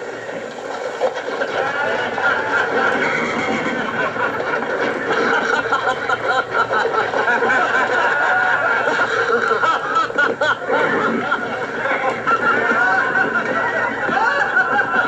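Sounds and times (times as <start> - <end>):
crowd laughing and chattering: 0.0 - 15.0.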